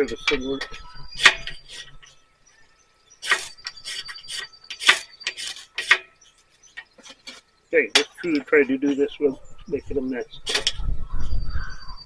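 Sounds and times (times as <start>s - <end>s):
steel scraping ferrocerium rod: 0.0s - 2.1s, 3.2s - 6.2s, 10.5s - 10.8s.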